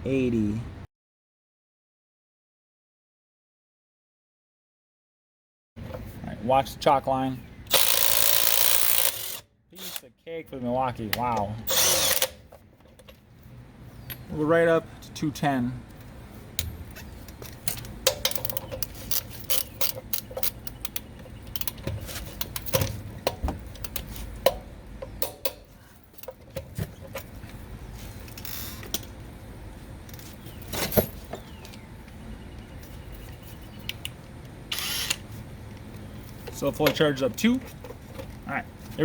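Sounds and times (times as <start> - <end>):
hand ratchet clicking: 7.7 - 10.0, 17.7 - 21.8
tools clicking and knocking: 16.6 - 27.3.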